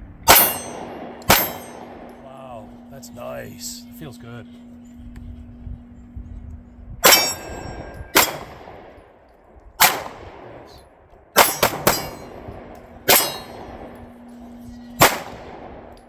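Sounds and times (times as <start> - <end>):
pistol shots with echo: 0.2 - 2.2, 7.0 - 9.0, 9.8 - 14.0, 15.0 - 16.0.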